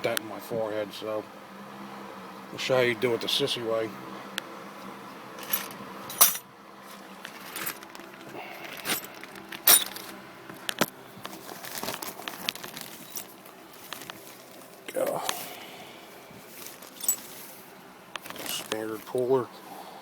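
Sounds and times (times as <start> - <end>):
metal parts clinking: 5.4 - 6.4, 7.3 - 10.1, 12.6 - 13.3, 16.6 - 17.4.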